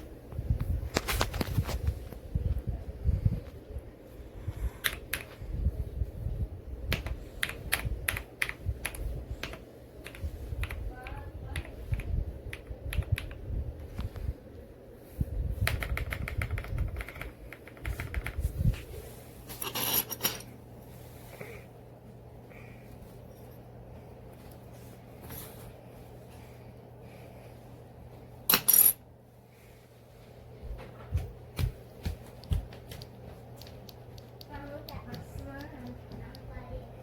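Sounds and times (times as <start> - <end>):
mechanical keyboard typing: 11.5 - 13.4, 15.6 - 18.4.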